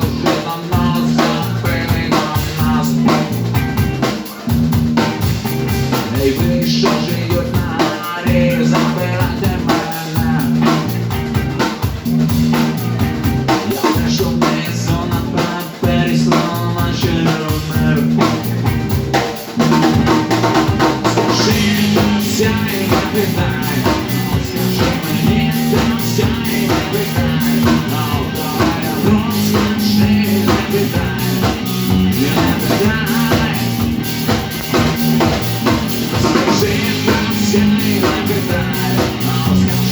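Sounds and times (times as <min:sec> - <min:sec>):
rock song on drums and guitar: 0:00.0 - 0:39.9.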